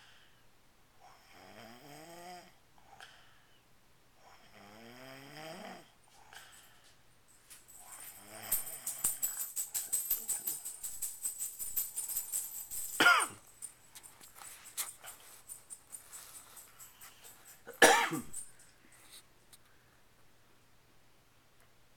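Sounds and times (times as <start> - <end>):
loud snores: 1.1 - 3.2, 4.2 - 6.0
metallic jingling and rattling: 7.3 - 19.0.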